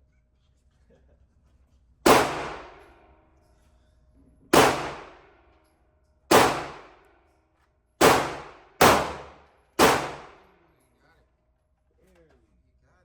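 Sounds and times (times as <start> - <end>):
pistol shots echoing: 2.1 - 3.0, 4.6 - 5.3, 6.3 - 7.0, 8.0 - 10.5.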